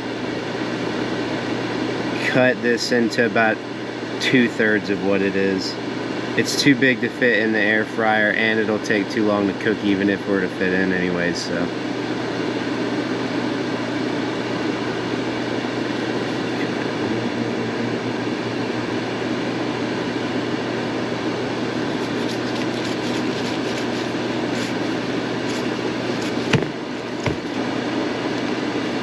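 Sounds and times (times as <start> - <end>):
air fryer fan whirring: 0.0 - 29.0
knife cutting meat: 21.9 - 27.5
knocks on cutting board: 26.5 - 27.4.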